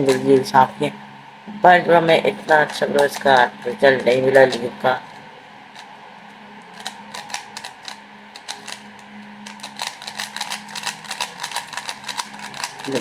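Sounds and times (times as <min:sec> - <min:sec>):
plastic puzzle cube clicking: 0:06.6 - 0:13.0.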